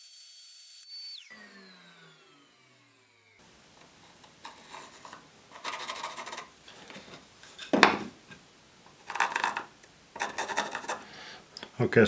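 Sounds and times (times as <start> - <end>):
wood scraping against wood: 3.4 - 11.4
sharp wooden knock: 7.7 - 8.2.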